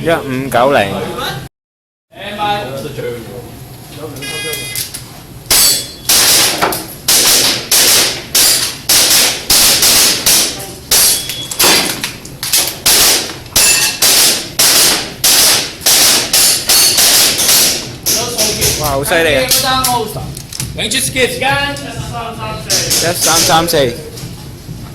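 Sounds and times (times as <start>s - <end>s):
airsoft pistol shots: 5.5s - 18.3s.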